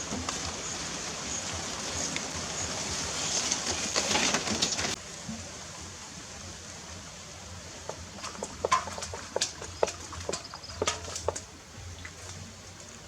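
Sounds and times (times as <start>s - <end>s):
water splashing and pattering: 0.0s - 13.0s
sharp ticks and drips: 7.8s - 13.0s.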